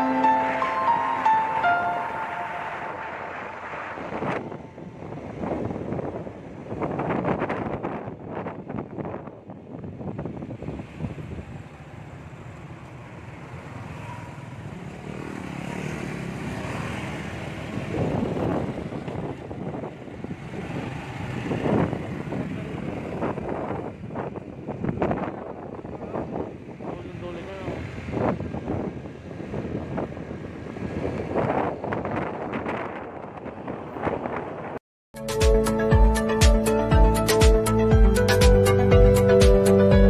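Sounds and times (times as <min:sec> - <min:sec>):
vehicle running: 0:00.0 - 0:09.1.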